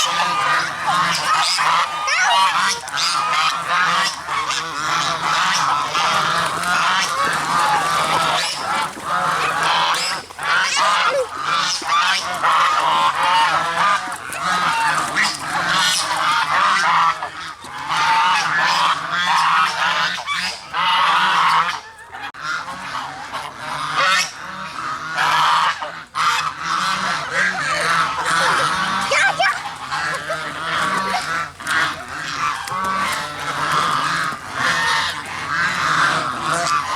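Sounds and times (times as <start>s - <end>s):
geese honking: 0.0s - 36.9s.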